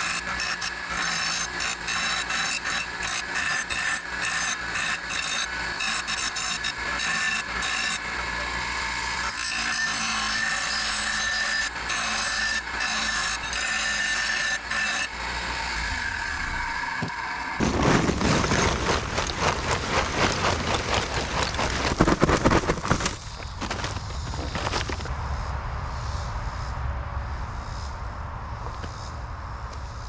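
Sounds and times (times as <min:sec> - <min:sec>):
hand tool scraping metal: 0:17.6 - 0:25.1.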